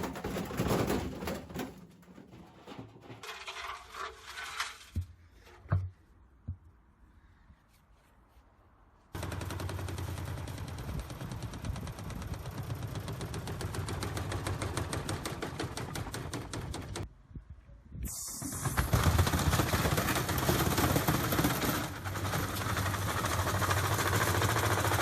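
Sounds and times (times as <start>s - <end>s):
washing machine knocking rattle: 9.2s - 17.0s, 18.8s - 25.0s.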